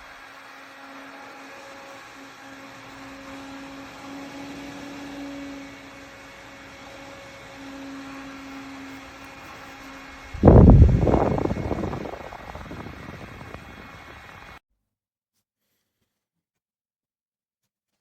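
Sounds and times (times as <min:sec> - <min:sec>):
desk fan whirring: 0:00.0 - 0:14.6.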